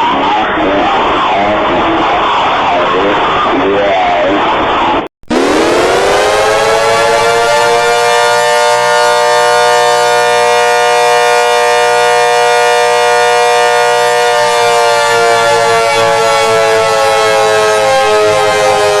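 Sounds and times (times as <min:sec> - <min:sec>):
emergency alert siren: 0:05.0 - 0:19.0.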